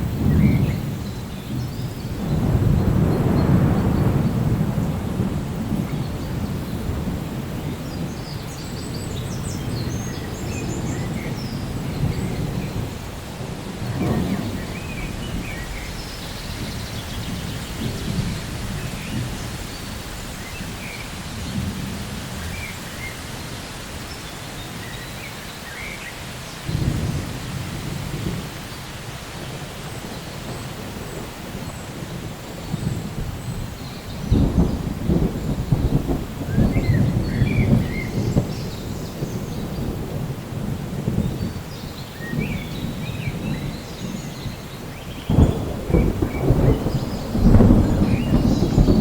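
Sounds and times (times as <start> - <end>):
thunder rumbling: 0.0 - 24.1, 26.6 - 49.0
steady rain: 0.0 - 49.0
sharp thunder clap: 2.2 - 8.1, 13.4 - 19.5, 26.7 - 28.5, 34.2 - 41.4, 45.3 - 49.0.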